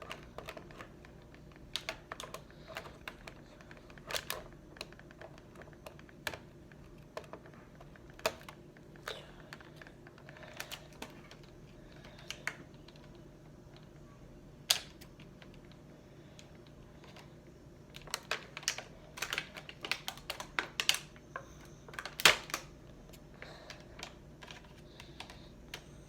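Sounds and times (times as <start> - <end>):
plastic packaging clicks and taps: 0.0 - 13.2, 17.9 - 22.7.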